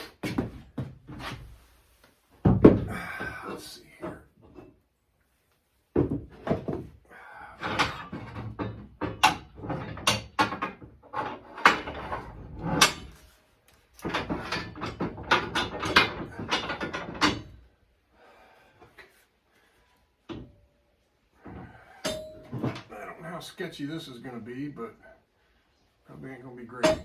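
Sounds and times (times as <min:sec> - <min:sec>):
metal parts knocking and clanking: 0:07.6 - 0:13.2, 0:14.0 - 0:17.6, 0:26.8 - 0:27.0.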